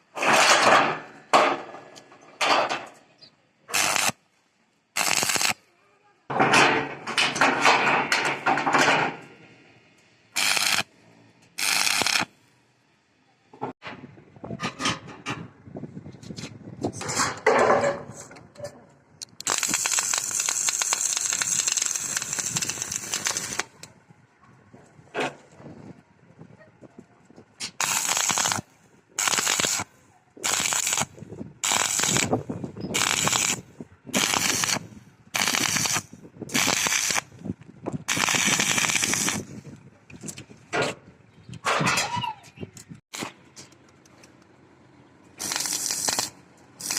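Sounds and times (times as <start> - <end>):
welding arc crackling: 3.7 - 4.2, 5.0 - 5.6, 10.4 - 10.9, 11.6 - 12.4, 19.3 - 23.8, 27.7 - 37.3, 38.1 - 39.5, 45.4 - 46.9
sharp metallic clicks: 19.2 - 23.9, 45.4 - 46.9.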